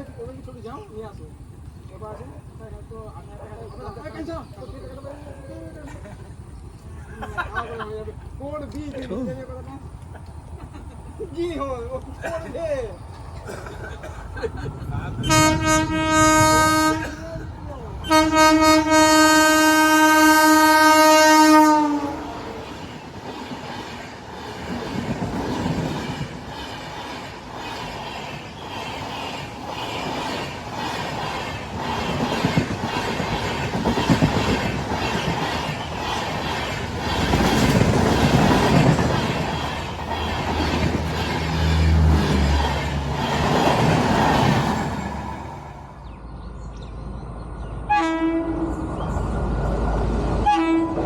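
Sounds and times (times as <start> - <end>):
locomotive horn blast: 15.2 - 17.4, 18.0 - 22.5, 47.9 - 48.8, 50.4 - 51.0
train wheels clattering over rail joints: 22.4 - 45.7.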